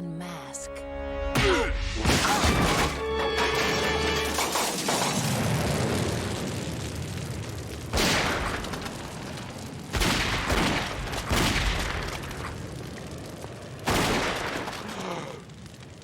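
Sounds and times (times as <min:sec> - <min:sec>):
cartoon explosion booms: 0:01.4 - 0:03.0, 0:04.4 - 0:12.7, 0:13.8 - 0:15.8.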